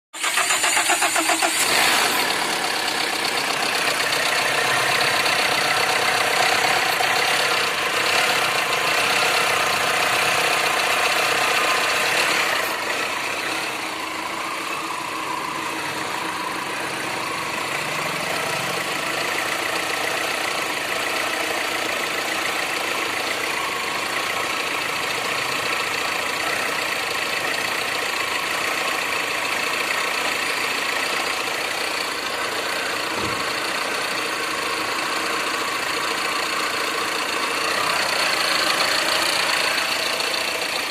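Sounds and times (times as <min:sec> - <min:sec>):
car engine idling: 0:00.2 - 0:40.9.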